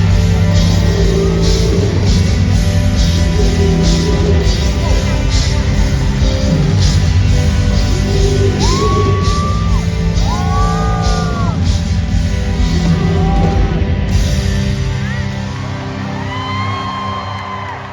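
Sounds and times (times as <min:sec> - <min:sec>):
live rock band playing: 0:00.0 - 0:17.2
crowd yelling: 0:08.2 - 0:12.0, 0:12.6 - 0:17.9.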